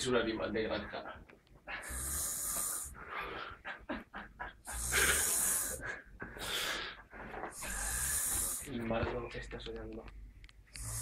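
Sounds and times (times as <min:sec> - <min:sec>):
person snoring: 0:01.8 - 0:03.5, 0:04.6 - 0:05.8, 0:07.5 - 0:08.7, 0:10.8 - 0:11.0
long hissing breaths: 0:01.8 - 0:03.6, 0:04.6 - 0:08.8, 0:10.7 - 0:11.0.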